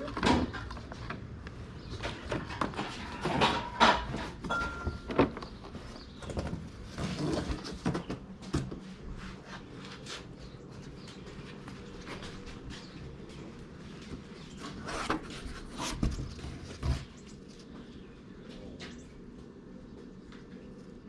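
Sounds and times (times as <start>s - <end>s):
objects knocking and rattling: 0.0s - 8.8s.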